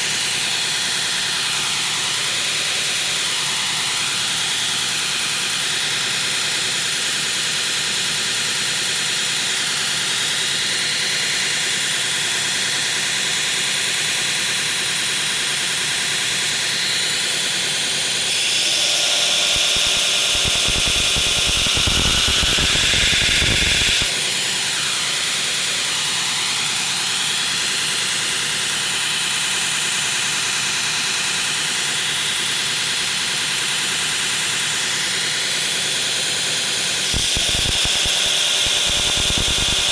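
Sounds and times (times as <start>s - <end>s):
belt grinder grinding steel: 18.2s - 24.1s, 37.1s - 39.9s.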